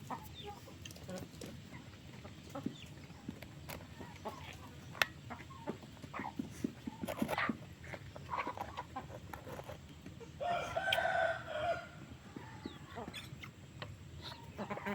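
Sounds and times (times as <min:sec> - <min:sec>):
hens clucking: 0:00.0 - 0:14.9
rooster crowing: 0:10.4 - 0:12.0.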